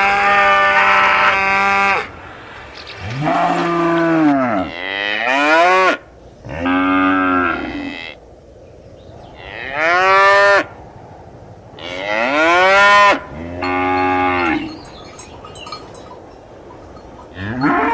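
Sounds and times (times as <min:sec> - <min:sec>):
cattle mooing: 0:03.0 - 0:08.2, 0:11.8 - 0:15.3, 0:17.3 - 0:17.9
faint clinks: 0:13.6 - 0:17.9.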